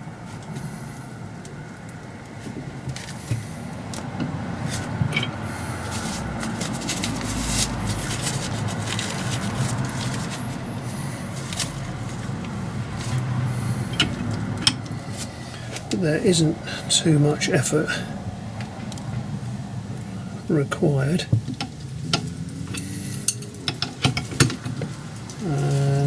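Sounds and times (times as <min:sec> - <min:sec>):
steel scraping and clicking: 0:11.4 - 0:15.9.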